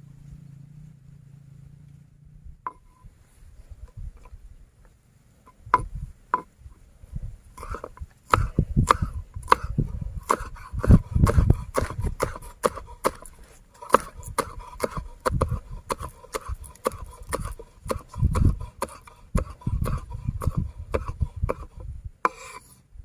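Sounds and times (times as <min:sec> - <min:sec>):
faint steady tone: 0:00.0 - 0:10.3.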